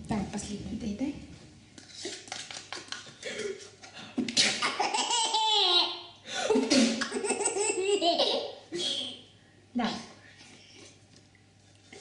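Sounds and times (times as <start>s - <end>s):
person sneezing: 4.3s - 4.8s
baby laughing: 4.6s - 6.1s, 7.0s - 8.6s.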